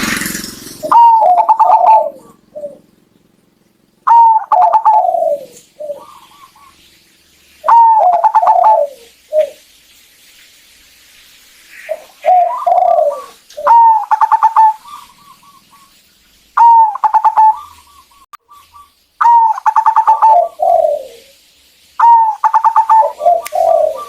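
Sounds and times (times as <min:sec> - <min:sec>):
dove cooing: 0:00.8 - 0:03.4, 0:04.0 - 0:06.9, 0:07.6 - 0:09.6, 0:11.8 - 0:16.0, 0:16.6 - 0:21.4, 0:22.0 - 0:24.0.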